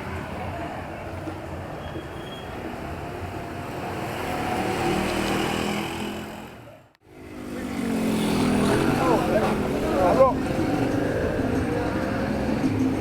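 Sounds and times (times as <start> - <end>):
steady street hum: 0.0 - 13.0
passing vehicle engine: 2.8 - 13.0.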